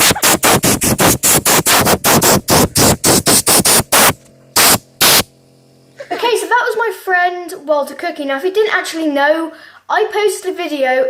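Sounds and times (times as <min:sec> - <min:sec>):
compressed air hissing spurts: 0:00.0 - 0:05.3.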